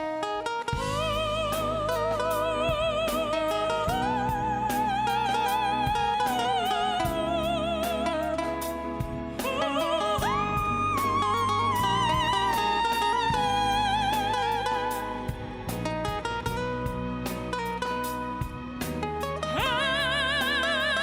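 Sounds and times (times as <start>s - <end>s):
lead line with vibrato: 0.2s - 21.0s
drum hits: 10.2s - 19.8s.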